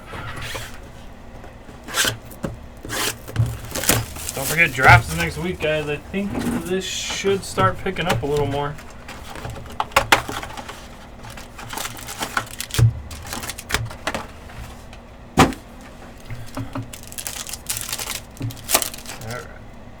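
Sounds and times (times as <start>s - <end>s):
wrappers crinkling and tearing: 1.8s - 6.0s, 7.4s - 14.0s, 16.1s - 19.6s.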